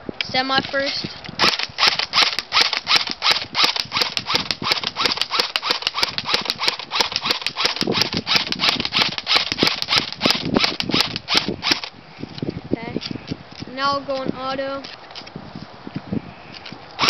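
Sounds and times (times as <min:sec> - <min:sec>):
airsoft gun firing shots: 0:01.4 - 0:11.9.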